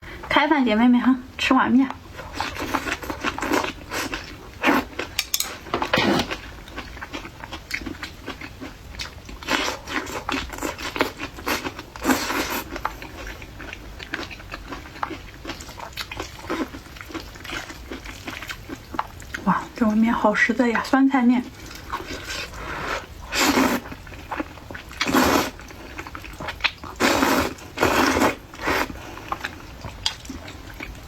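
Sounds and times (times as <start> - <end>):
chopsticks and noodles clicking: 5.1 - 5.7.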